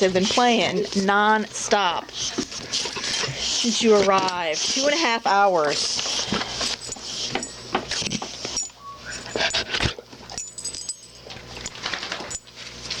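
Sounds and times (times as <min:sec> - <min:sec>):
dogs scuffling and clicking: 0:00.0 - 0:13.0
dog whining: 0:05.8 - 0:10.0.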